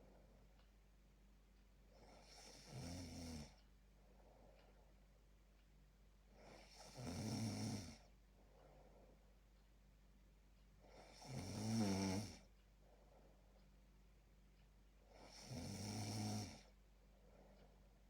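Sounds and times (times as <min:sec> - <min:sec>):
faint breaths: 0:00.0 - 0:00.7, 0:03.4 - 0:05.3, 0:06.2 - 0:09.7, 0:12.1 - 0:13.9, 0:15.0 - 0:18.0
person snoring: 0:02.0 - 0:03.6, 0:06.4 - 0:08.1, 0:10.9 - 0:12.5, 0:15.2 - 0:16.7.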